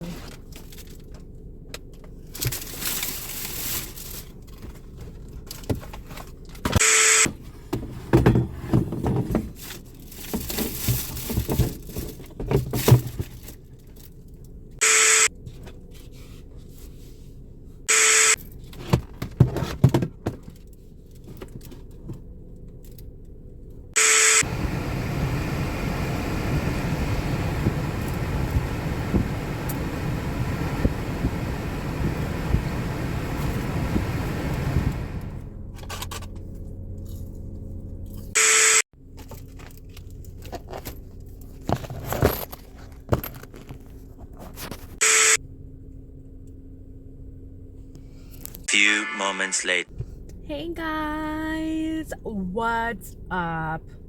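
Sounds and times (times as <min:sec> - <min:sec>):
short beeps: 0:06.8 - 0:07.3, 0:14.8 - 0:15.3, 0:17.9 - 0:18.4, 0:24.0 - 0:24.4, 0:38.4 - 0:38.8, 0:45.0 - 0:45.4
car cabin noise: 0:24.0 - 0:36.7.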